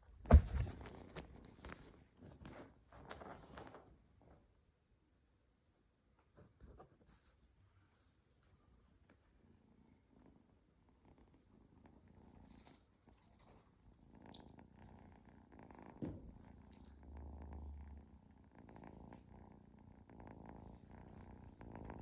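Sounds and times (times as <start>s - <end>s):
cat purring: 8.6s - 22.0s.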